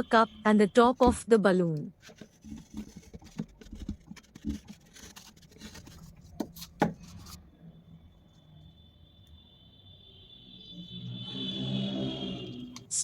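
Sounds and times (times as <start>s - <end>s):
scissors scraping paper: 2.0s - 7.4s.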